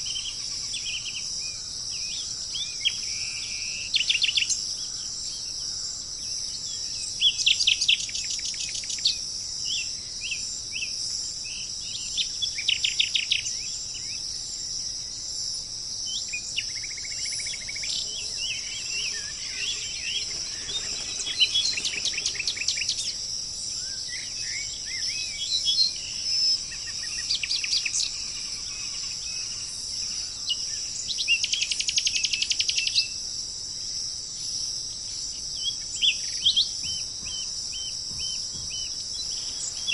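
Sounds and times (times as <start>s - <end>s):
crickets chorus: 0.0s - 39.9s
songbirds singing: 0.0s - 39.9s.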